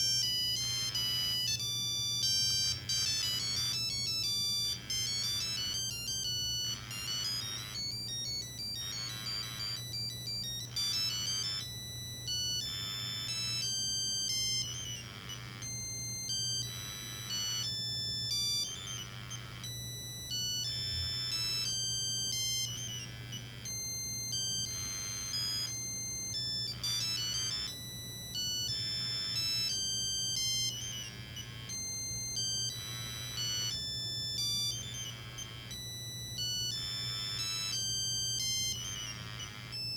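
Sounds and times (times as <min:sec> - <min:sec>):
mobile phone ringtone: 0:00.0 - 0:14.9, 0:23.7 - 0:27.6, 0:28.4 - 0:31.0, 0:31.7 - 0:39.9.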